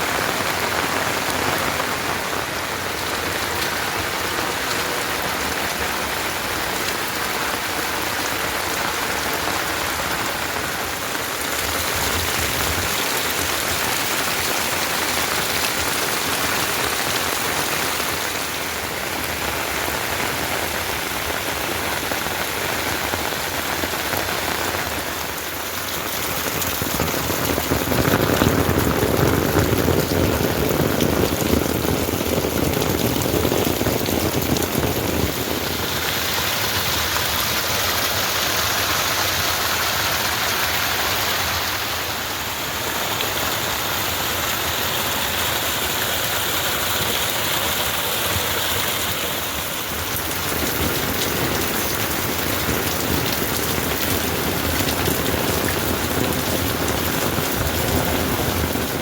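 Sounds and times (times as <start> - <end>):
heavy rain falling: 0.0 - 59.0.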